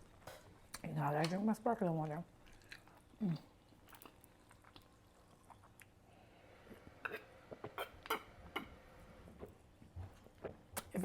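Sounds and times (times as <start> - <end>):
mouth sounds of eating: 2.5 - 6.0.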